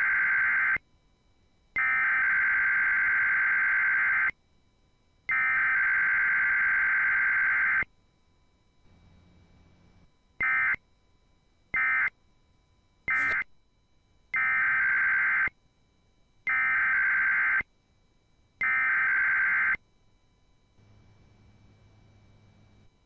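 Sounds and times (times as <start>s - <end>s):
buzzing warble data bursts: 13.1s - 13.5s.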